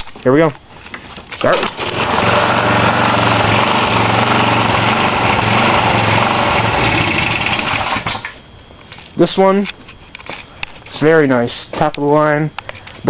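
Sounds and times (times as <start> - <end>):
lawn mower engine running: 1.4 - 8.4.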